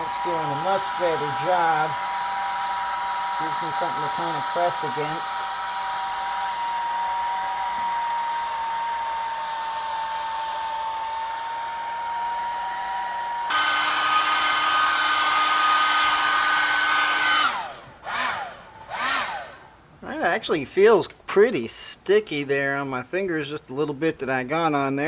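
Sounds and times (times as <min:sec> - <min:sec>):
hair dryer blowing with motor whine: 0:00.0 - 0:19.6.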